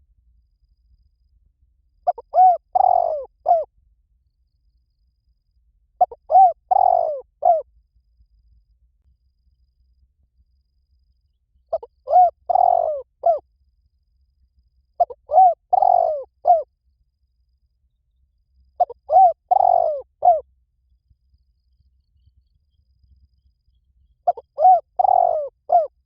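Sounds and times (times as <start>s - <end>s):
dove cooing: 2.0s - 3.7s, 6.0s - 7.6s, 11.7s - 13.4s, 15.0s - 16.7s, 18.8s - 20.4s, 24.2s - 26.0s.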